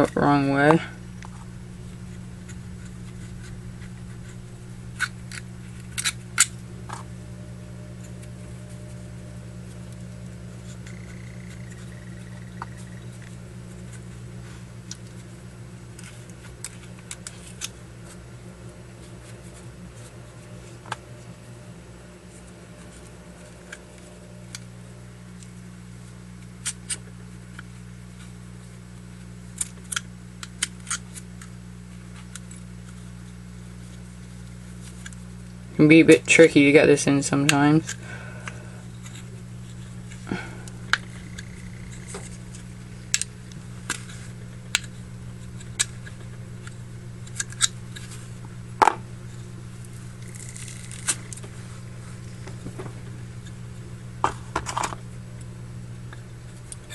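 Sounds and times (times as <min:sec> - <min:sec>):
steady low hum: 0:00.0 - 0:56.9.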